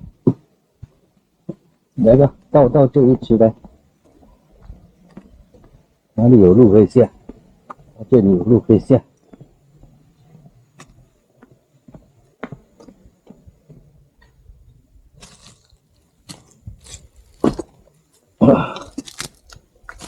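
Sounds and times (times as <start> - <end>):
footsteps crunching through dry grass: 9.3 - 20.0.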